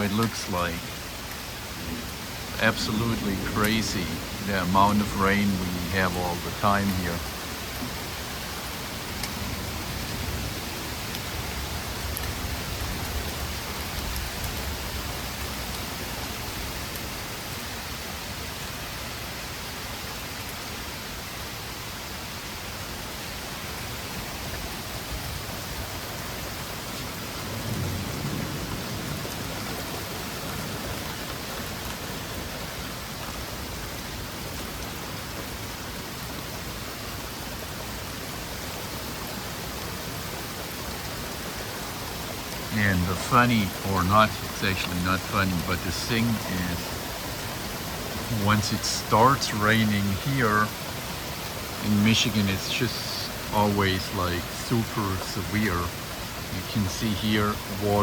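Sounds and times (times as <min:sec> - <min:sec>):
heavy rain pouring: 0:00.0 - 0:58.0
thunder rumbles: 0:01.7 - 0:16.9, 0:26.2 - 0:35.0.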